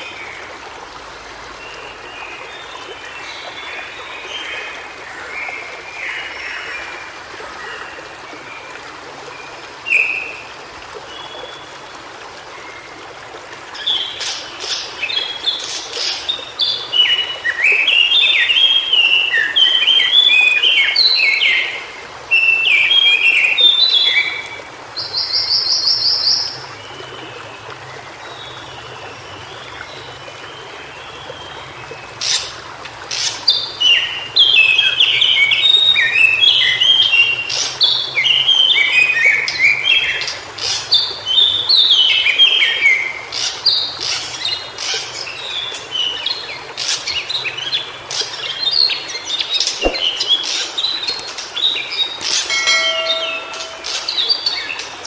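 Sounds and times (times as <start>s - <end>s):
bird singing quick high notes: 49.8s - 50.3s, 52.5s - 54.6s
bird trill: 52.3s - 54.9s.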